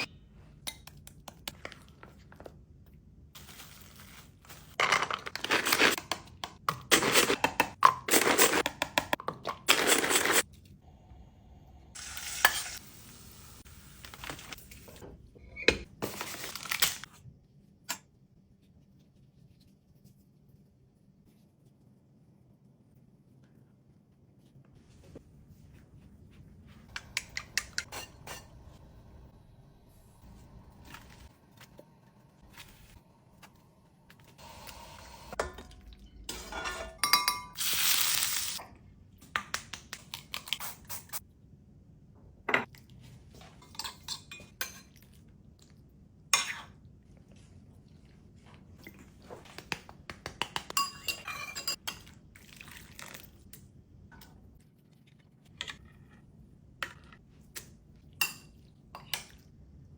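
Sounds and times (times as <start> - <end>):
dishes and utensils clinking: 35.4 - 37.6, 43.5 - 45.0, 50.6 - 52.2.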